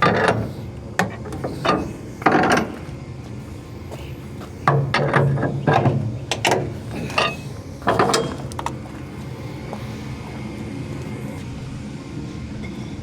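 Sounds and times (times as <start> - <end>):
log trailer clanking and rattling: 0.0 - 9.4
truck engine low drone: 0.0 - 13.0.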